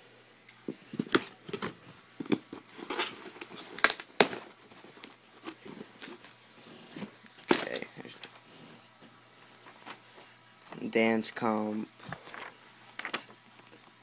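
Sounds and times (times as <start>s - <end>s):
cardboard and paper crackling: 12.0s - 13.9s.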